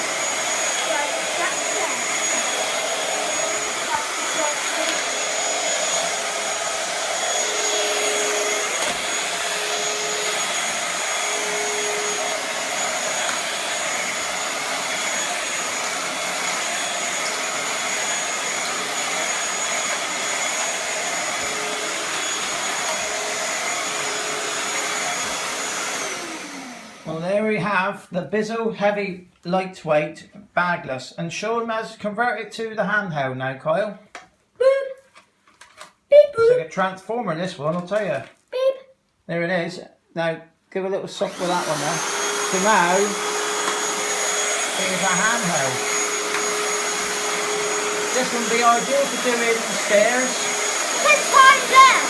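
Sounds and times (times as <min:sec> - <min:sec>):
stick vacuum running: 0:00.0 - 0:27.0, 0:41.2 - 0:52.0.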